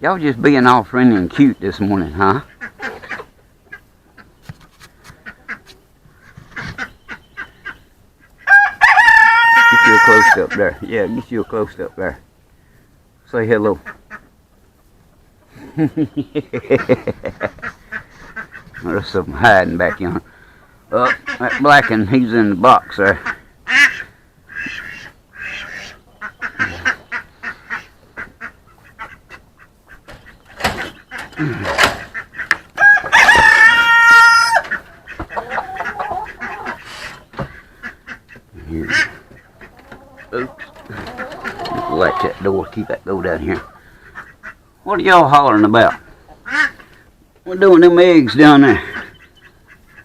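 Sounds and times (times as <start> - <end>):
duck quacking: 16.4 - 20.2, 20.9 - 22.1, 22.7 - 32.6, 33.3 - 47.0, 48.4 - 50.0.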